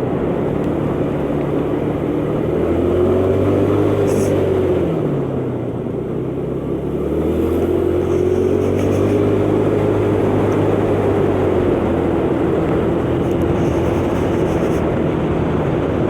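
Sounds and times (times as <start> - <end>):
motor scooter engine running: 0.0 - 16.0.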